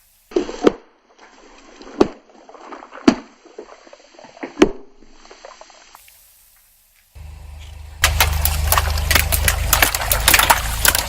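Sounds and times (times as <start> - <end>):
objects popping as crushed: 8.0 - 11.0.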